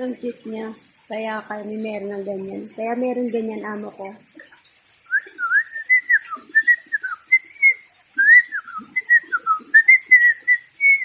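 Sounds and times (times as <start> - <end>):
person whistling a tune: 5.1 - 11.0.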